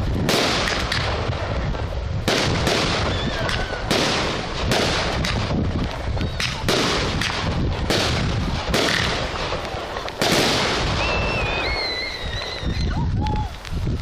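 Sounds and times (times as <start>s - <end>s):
fireworks crackle and rumble: 0.0s - 14.0s.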